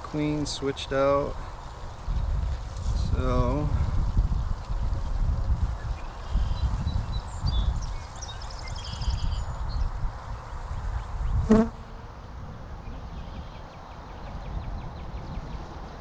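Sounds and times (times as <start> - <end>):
bee flying past microphone: 11.4 - 12.1
bees buzzing: 11.4 - 12.2.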